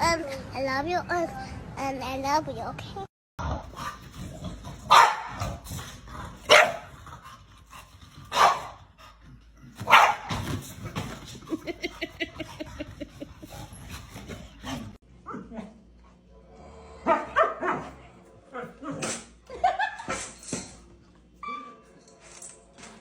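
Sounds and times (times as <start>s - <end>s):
dog yelping: 4.9s - 5.3s, 6.5s - 6.8s, 8.4s - 8.7s, 9.9s - 10.3s
dog barking: 4.9s - 5.6s, 6.5s - 6.9s, 8.3s - 8.8s, 9.8s - 10.4s, 17.0s - 18.0s.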